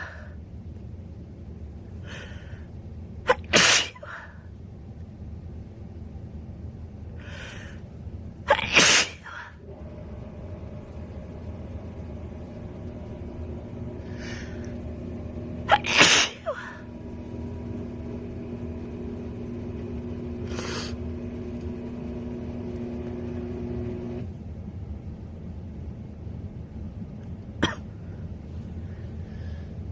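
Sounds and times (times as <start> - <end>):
low steady hum: 0.0 - 29.9
faint breaths: 1.9 - 2.8, 7.1 - 8.0, 14.0 - 14.8, 27.9 - 29.9
woman sneezing: 3.3 - 4.4, 8.5 - 9.6, 15.7 - 16.8.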